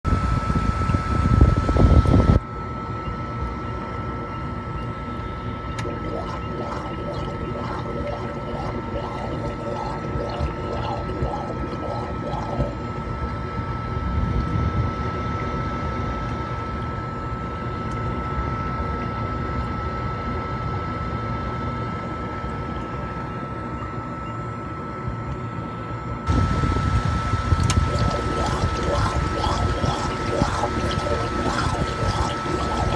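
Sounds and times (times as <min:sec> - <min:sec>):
low hum: 0:05.6 - 0:13.2.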